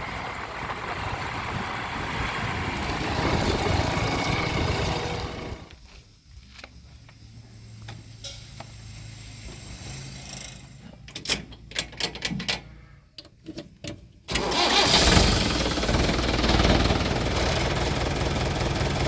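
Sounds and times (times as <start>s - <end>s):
heavy diesel engine running: 0.0s - 5.7s, 14.3s - 19.0s.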